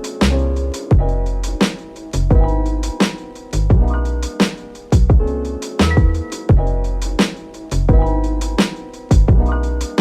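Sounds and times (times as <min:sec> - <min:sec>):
deep bass notes: 0:02.2 - 0:03.0, 0:03.6 - 0:04.3.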